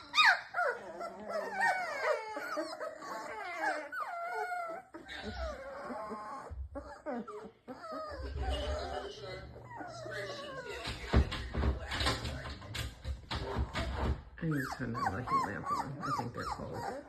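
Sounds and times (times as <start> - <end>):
puppies whimpering and whining: 0.0 - 17.0.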